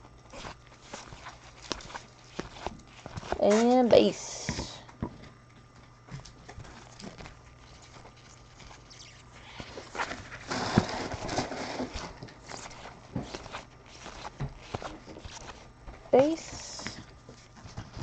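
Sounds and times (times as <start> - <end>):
card packaging rustling: 6.5 - 18.0.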